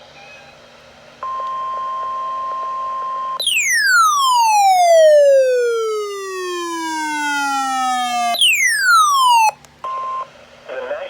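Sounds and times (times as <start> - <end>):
steady electronic beep: 3.4 - 9.5
tone gliding down in pitch: 3.4 - 9.5.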